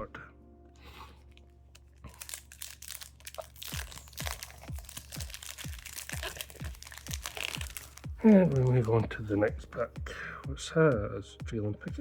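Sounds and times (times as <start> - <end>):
foil wrapper crinkling: 1.3 - 9.1
background music with low beat: 2.8 - 12.0.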